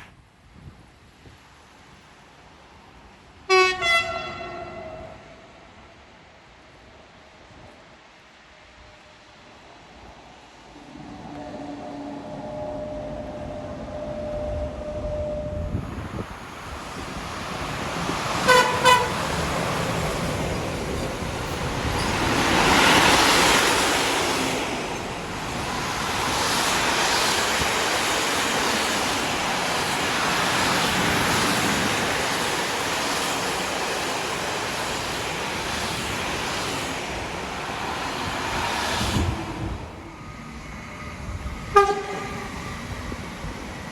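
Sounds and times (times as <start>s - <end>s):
passing train rushing: 0.0s - 43.9s
train horn toots: 3.5s - 5.4s, 18.5s - 19.2s, 41.7s - 42.6s.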